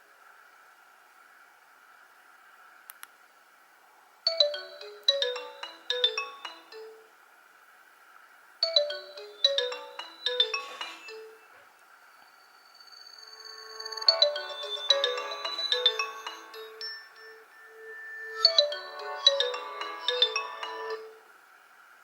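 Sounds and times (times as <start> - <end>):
faint clicks: 2.8 - 3.2
phone ringtone melody: 4.3 - 7.1, 8.6 - 11.5, 12.8 - 21.3.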